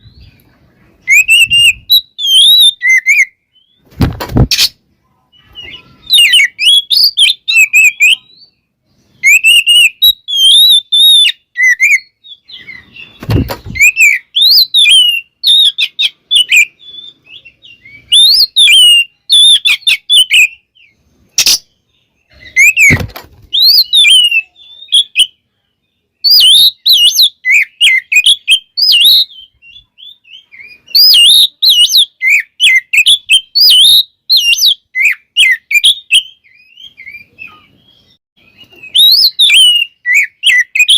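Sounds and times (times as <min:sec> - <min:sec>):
bird singing varied whistles: 0:01.0 - 0:03.9, 0:05.4 - 0:25.4, 0:26.2 - 0:40.9
dull thumps: 0:03.8 - 0:04.6, 0:13.2 - 0:13.9, 0:22.7 - 0:23.6.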